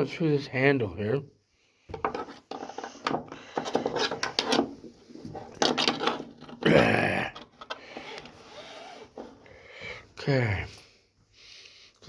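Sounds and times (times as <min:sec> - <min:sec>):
cable clicks taps and rustles: 0:01.9 - 0:06.6, 0:07.3 - 0:08.4.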